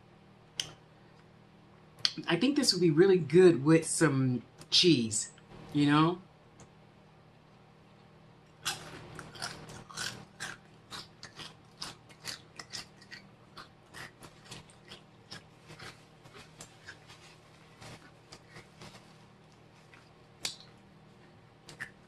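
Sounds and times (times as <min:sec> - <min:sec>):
person chewing crunchy chips: 0:08.5 - 0:22.0.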